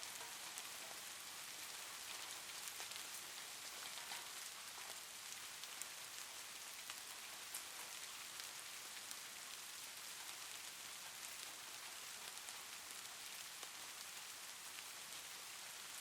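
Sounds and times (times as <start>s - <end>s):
raindrop ticks: 0.0s - 9.2s
rain hiss: 0.0s - 16.0s.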